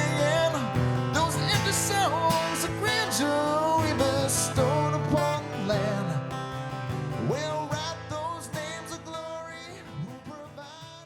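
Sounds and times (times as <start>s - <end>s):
person singing: 0.0s - 6.3s
guitar: 0.0s - 11.0s.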